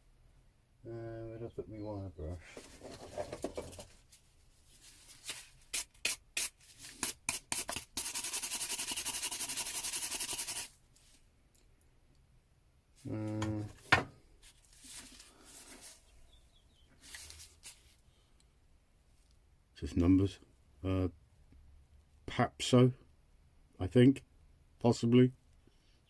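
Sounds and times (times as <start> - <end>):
wire brush scrubbing metal: 5.7 - 10.7.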